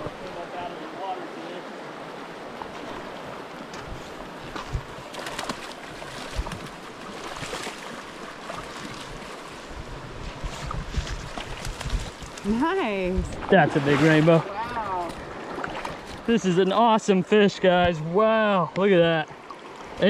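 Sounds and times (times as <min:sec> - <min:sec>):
creek water rushing: 0:00.0 - 0:20.0
water splashes: 0:00.0 - 0:20.0
wind bumping on microphone: 0:03.7 - 0:05.0, 0:09.7 - 0:14.0.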